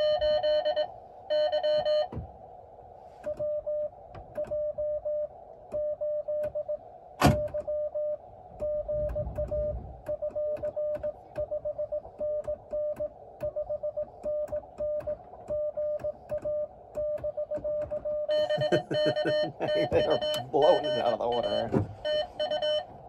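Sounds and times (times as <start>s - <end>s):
morse code tone: 0.0s - 2.1s, 7.5s - 23.0s.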